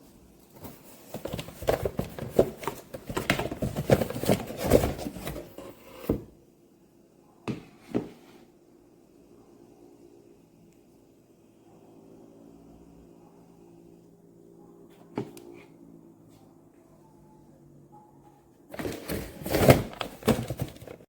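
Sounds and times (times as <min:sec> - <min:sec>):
plastic bowls clattering: 0:00.6 - 0:06.3, 0:18.7 - 0:21.0.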